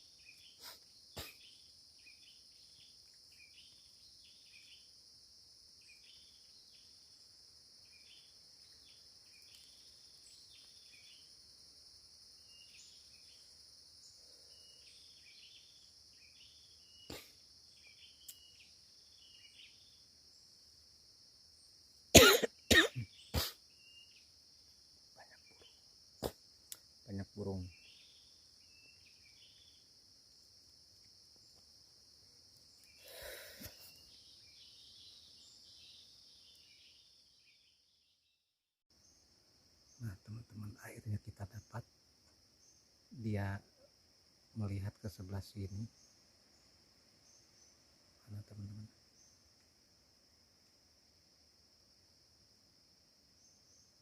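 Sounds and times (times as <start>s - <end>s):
forest insects droning: 0.0s - 54.0s
insect chirps: 0.0s - 54.0s
person coughing: 1.2s - 1.4s, 22.2s - 23.6s.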